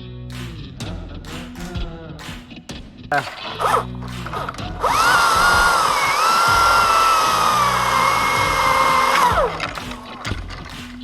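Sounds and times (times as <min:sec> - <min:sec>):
chainsaw revving: 0:03.6 - 0:09.7.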